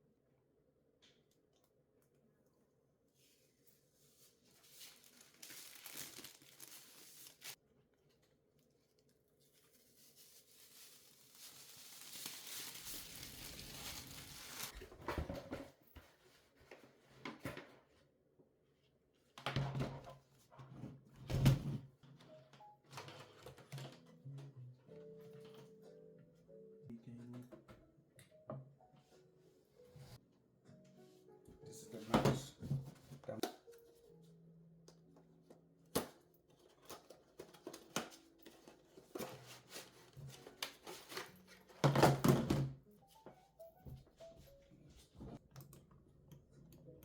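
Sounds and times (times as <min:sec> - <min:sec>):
packaging crinkling and tearing: 0:04.6 - 0:07.6, 0:09.5 - 0:14.8.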